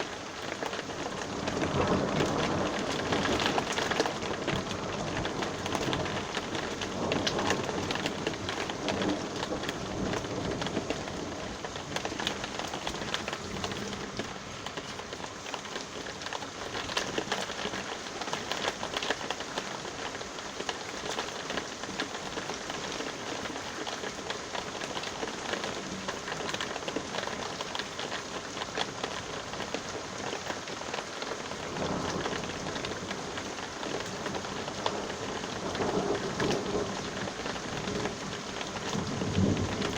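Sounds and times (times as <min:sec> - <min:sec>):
rain pattering: 0:00.0 - 0:39.9
low thunder rumble: 0:31.7 - 0:39.9.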